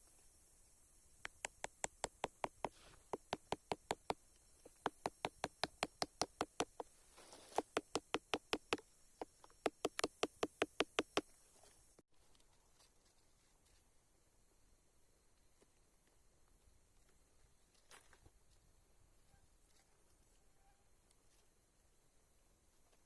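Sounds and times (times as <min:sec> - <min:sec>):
rapid sharp knocking: 0:01.4 - 0:06.9, 0:07.6 - 0:11.3.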